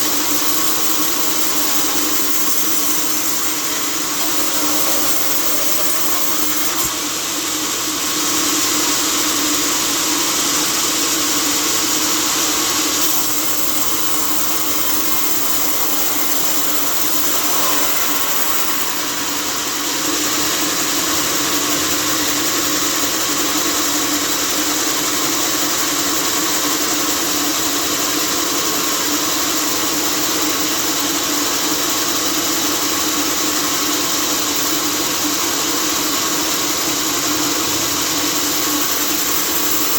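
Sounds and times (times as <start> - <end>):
sawmill machinery running: 0.0 - 24.4, 36.2 - 39.9.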